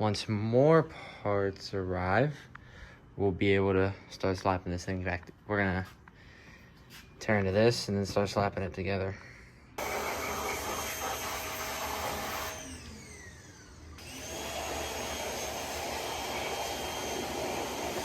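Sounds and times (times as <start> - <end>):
electric fan tool whining: 9.8 - 18.0.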